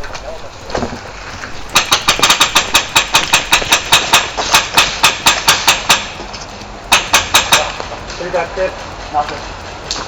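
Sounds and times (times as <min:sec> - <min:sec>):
airsoft rifle firing rapidly: 0:01.7 - 0:06.1.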